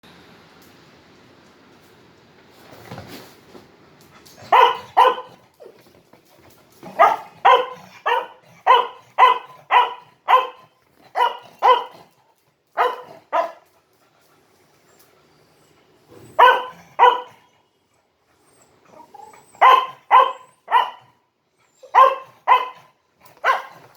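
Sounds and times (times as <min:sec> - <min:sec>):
dog barking: 0:04.5 - 0:05.4, 0:06.9 - 0:12.0, 0:12.8 - 0:13.6, 0:16.4 - 0:17.5, 0:19.6 - 0:21.2, 0:21.9 - 0:23.8.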